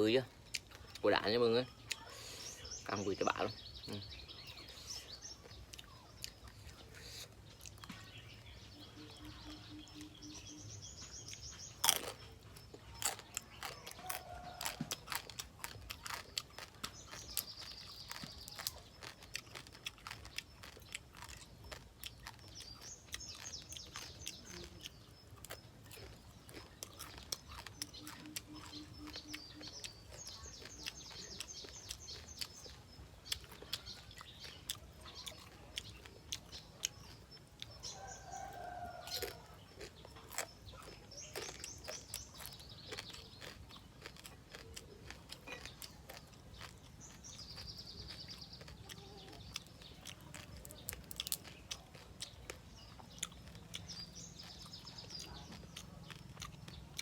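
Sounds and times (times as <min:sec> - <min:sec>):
birds chirping: 0:00.0 - 0:57.0
crab shell crunching: 0:05.2 - 0:57.0.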